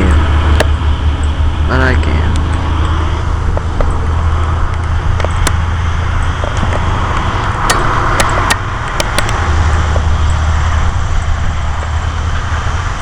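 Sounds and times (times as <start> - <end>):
road traffic rumble: 0.0 - 13.0
sharp clicks: 6.2 - 10.4.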